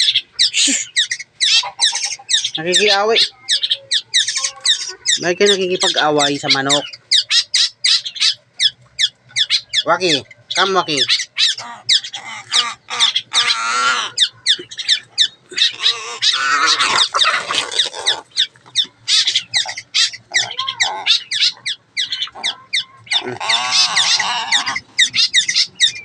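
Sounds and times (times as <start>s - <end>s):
chicken squawking: 0.0s - 26.0s
crow cawing: 11.1s - 25.7s.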